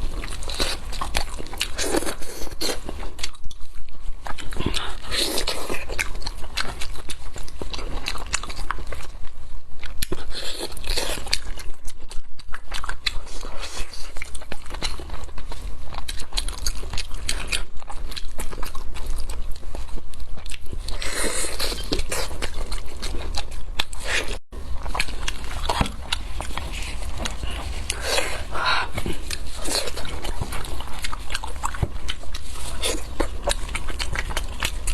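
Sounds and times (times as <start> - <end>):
low steady hum: 0.0 - 3.1, 24.5 - 34.9
chewing and crunching: 0.0 - 34.9.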